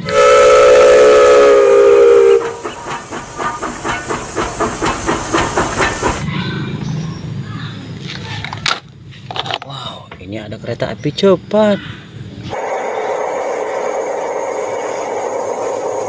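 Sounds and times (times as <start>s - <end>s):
steam whistle: 0.0s - 4.4s, 12.5s - 16.0s
steam engine chuffing: 0.0s - 6.3s, 12.5s - 16.0s.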